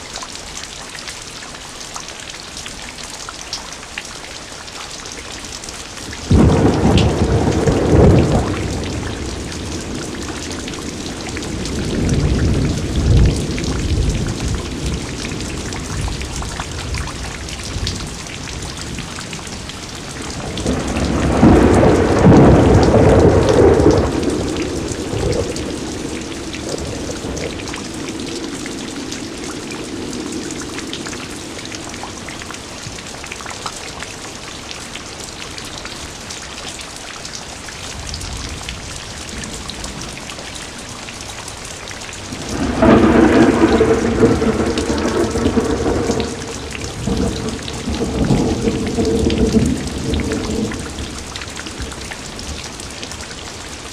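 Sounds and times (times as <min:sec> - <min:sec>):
steady rain: 0:00.0 - 0:53.9
thunder rumbling: 0:06.3 - 0:32.3, 0:42.3 - 0:52.6.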